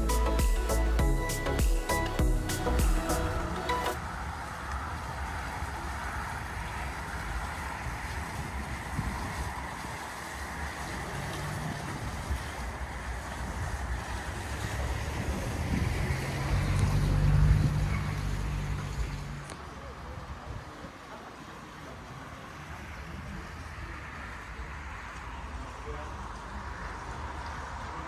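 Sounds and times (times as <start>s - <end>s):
wind on microphone: 3.4s - 19.4s.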